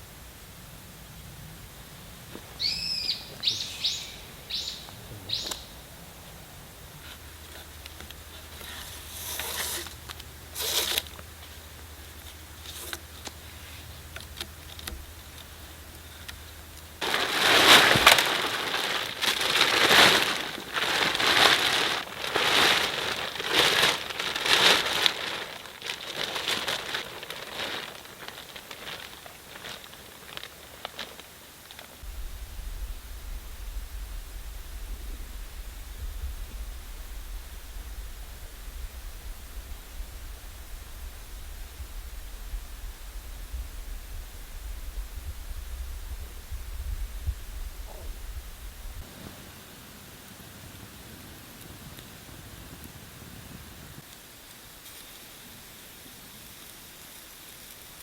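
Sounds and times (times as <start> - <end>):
bird whistling call: 2.6 - 5.7
loud uneven rustling: 6.4 - 31.0.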